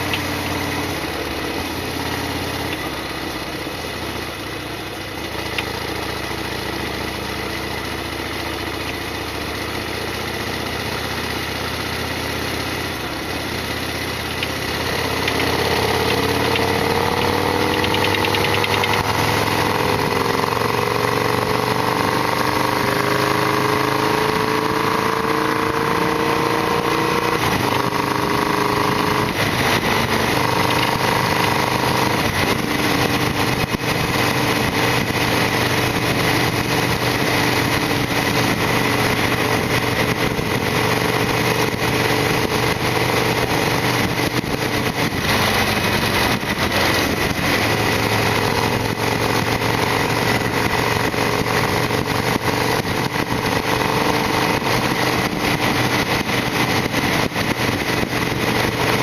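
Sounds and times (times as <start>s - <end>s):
motorcycle engine accelerating: 0.0s - 59.0s
rush of wind noise: 22.7s - 59.0s.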